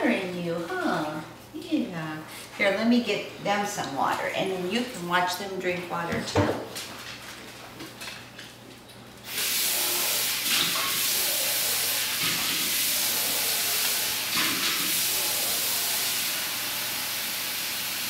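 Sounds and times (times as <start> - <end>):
water running from a tap: 9.3 - 18.0.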